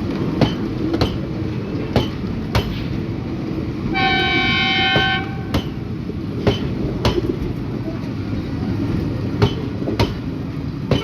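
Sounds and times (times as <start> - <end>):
train wheels clicking over rail joints: 0.0 - 3.2, 4.9 - 8.2, 8.9 - 11.0
train rumble: 0.0 - 11.0.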